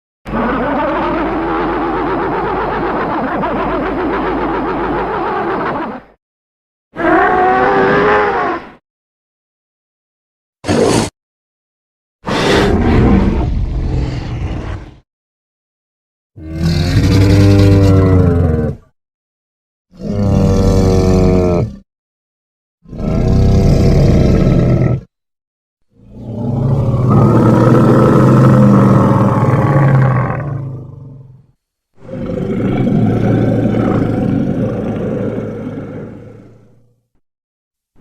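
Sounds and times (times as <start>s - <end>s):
monster roar: 0.3s - 5.4s, 12.3s - 15.0s, 16.4s - 18.9s, 20.0s - 21.8s, 22.9s - 25.1s, 26.0s - 31.3s, 32.0s - 36.7s.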